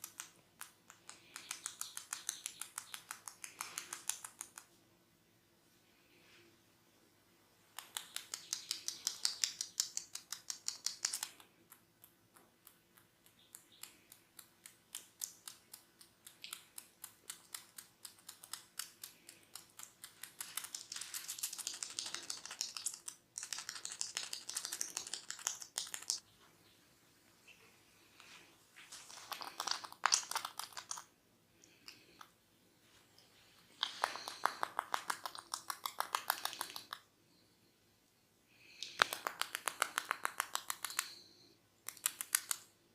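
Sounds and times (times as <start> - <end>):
hair cracking clicks: 0.0 - 4.7, 7.8 - 26.2, 29.0 - 32.3, 33.8 - 37.0, 38.7 - 42.7.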